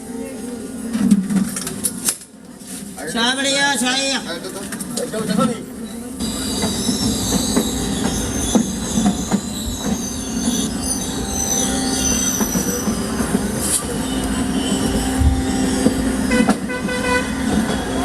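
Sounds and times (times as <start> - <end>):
train rumbling on rails: 3.7 - 18.0
wheels squealing on rails: 5.6 - 18.0
irregular rail clacks: 6.2 - 18.0.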